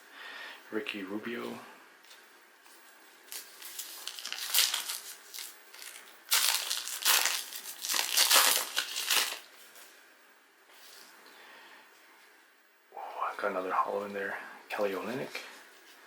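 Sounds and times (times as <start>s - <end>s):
foil wrapper crinkling: 3.3s - 9.5s.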